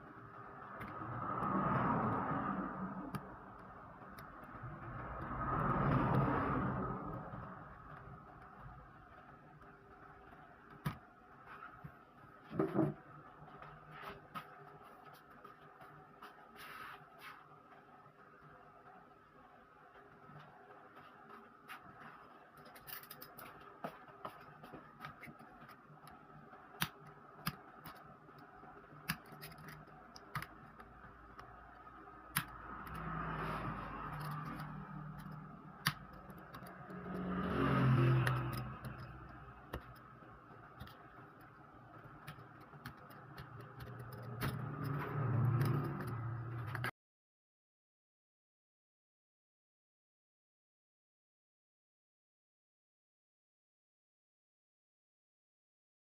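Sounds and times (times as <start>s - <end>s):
small parts and tools clicking: 0.0s - 11.8s, 21.8s - 46.9s.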